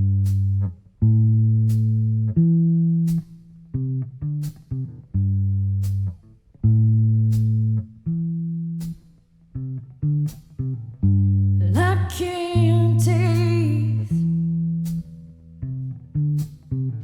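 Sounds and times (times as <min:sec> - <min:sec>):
deep plucked string notes: 0:00.0 - 0:17.0
person singing: 0:11.6 - 0:14.4.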